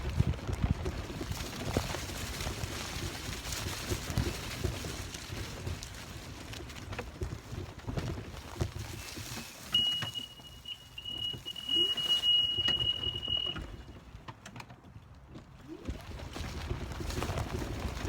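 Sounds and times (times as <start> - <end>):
steady high tone: 9.8 - 13.8.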